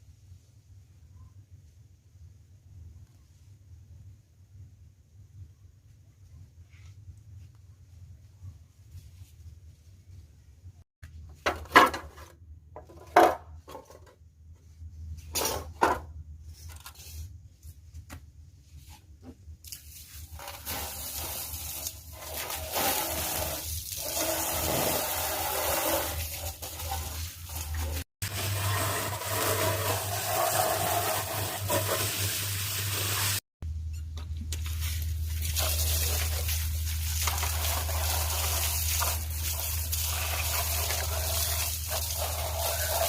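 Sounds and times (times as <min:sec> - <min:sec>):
hard objects knocking and scraping: 0:11.3 - 0:14.2.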